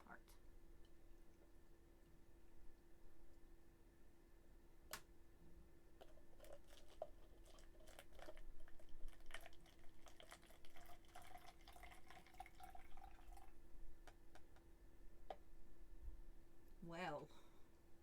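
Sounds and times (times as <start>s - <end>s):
hot water pouring into a cup: 6.0s - 14.5s.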